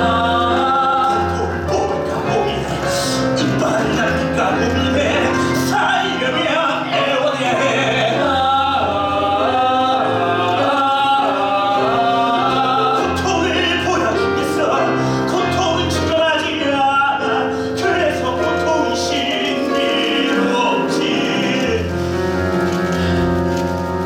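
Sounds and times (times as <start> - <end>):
person singing with vibrato: 0.0 - 24.0.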